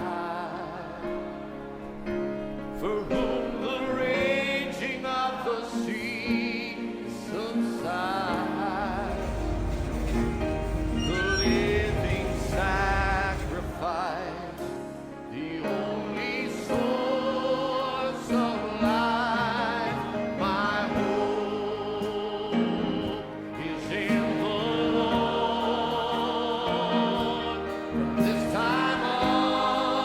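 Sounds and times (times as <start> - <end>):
gospel choir singing: 0.0 - 30.0
sustained accompaniment chords: 8.6 - 16.1.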